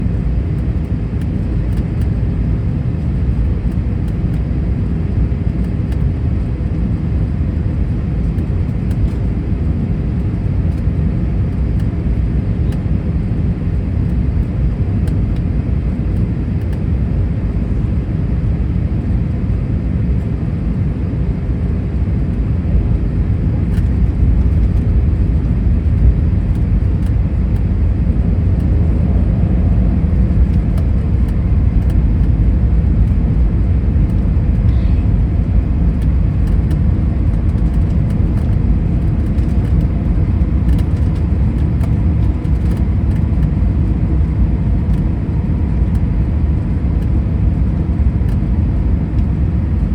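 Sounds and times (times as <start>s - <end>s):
aircraft engine rumble: 0.0s - 49.9s
faint steady hum: 21.6s - 41.9s.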